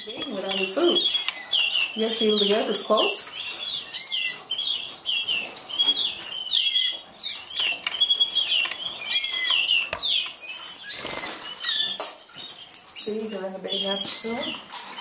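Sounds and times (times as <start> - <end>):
canaries chirping: 0.0 - 15.0
wings fluttering: 9.9 - 12.0.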